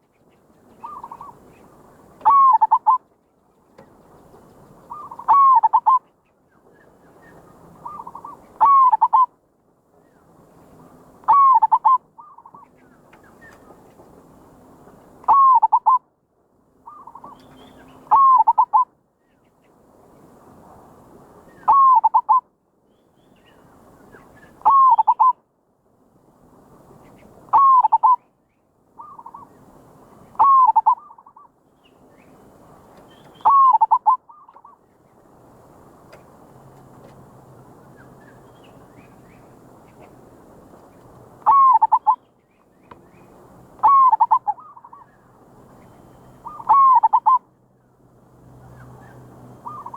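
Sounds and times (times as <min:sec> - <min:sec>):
dove cooing: 0:00.8 - 0:01.4, 0:02.2 - 0:03.0, 0:04.9 - 0:06.0, 0:07.8 - 0:09.3, 0:11.2 - 0:12.6, 0:15.3 - 0:16.0, 0:18.1 - 0:18.8, 0:21.7 - 0:22.4, 0:24.6 - 0:25.4, 0:27.5 - 0:28.2, 0:29.0 - 0:29.5, 0:30.4 - 0:31.4, 0:33.3 - 0:34.7, 0:41.4 - 0:42.2, 0:43.8 - 0:45.1, 0:46.4 - 0:47.4, 0:49.6 - 0:49.9.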